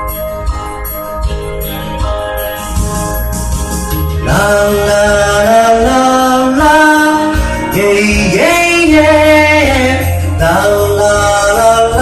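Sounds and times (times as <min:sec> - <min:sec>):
pop-rock backing music: 0:00.0 - 0:12.0
person singing wordless melody: 0:04.2 - 0:12.0.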